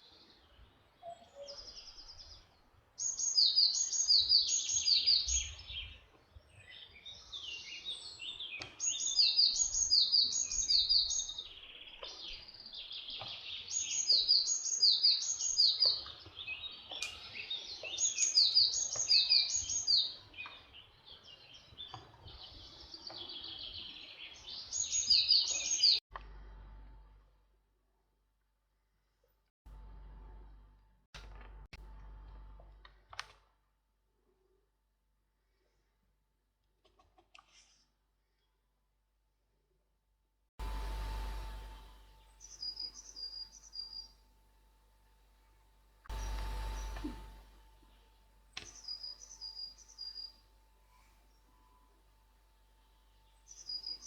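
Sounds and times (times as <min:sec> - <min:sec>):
songbirds singing: 0:00.0 - 0:26.0, 0:40.7 - 0:44.3, 0:46.1 - 0:54.0.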